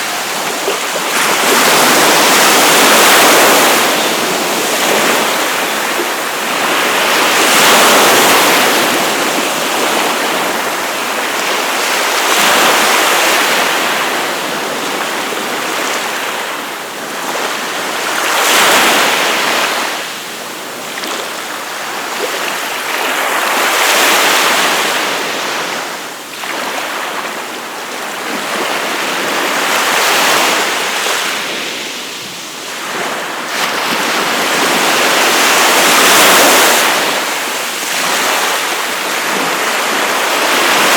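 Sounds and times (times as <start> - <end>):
surf breaking on beach: 0.0 - 16.6, 28.3 - 40.9.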